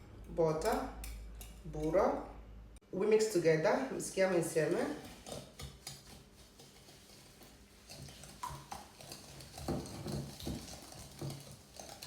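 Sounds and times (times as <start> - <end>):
utensil knocking and scraping bowl: 4.1 - 12.0.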